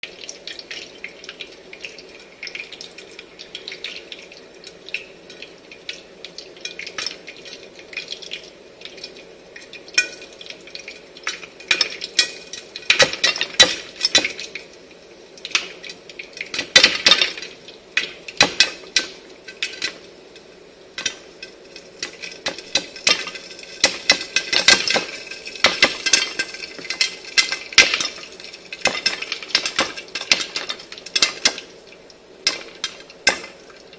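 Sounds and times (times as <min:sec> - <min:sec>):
popcorn sizzling: 0:00.0 - 0:33.9
popcorn kernels popping: 0:05.0 - 0:14.7, 0:15.4 - 0:20.1, 0:21.0 - 0:31.8, 0:32.4 - 0:33.9.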